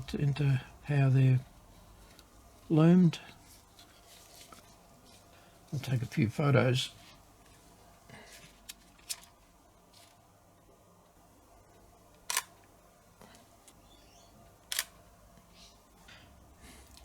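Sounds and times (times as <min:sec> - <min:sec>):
camera shutter clicking: 0:12.3 - 0:12.5, 0:14.7 - 0:15.0.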